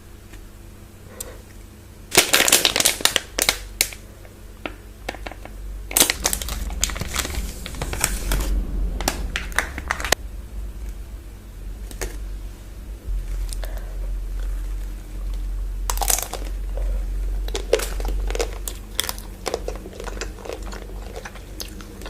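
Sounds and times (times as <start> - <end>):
wrappers crinkling: 2.1 - 4.0, 5.1 - 8.4.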